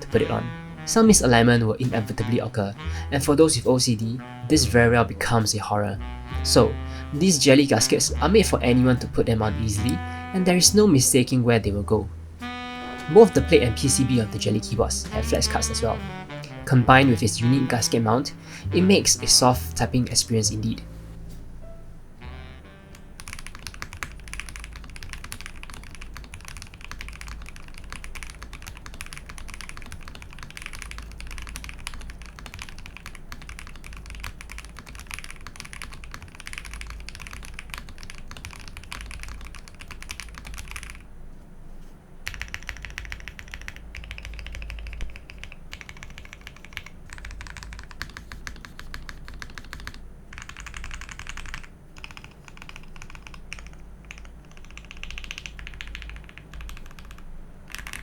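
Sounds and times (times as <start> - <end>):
fast mechanical keyboard typing: 23.2 - 41.0, 42.2 - 58.0.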